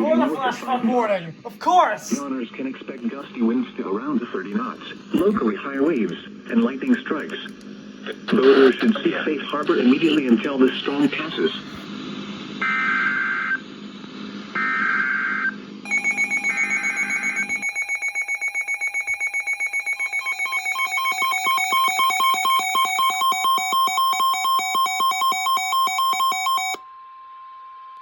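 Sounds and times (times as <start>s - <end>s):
pulsing electronic attention tone: 15.9s - 26.8s
two-tone digital data bursts: 15.9s - 26.8s.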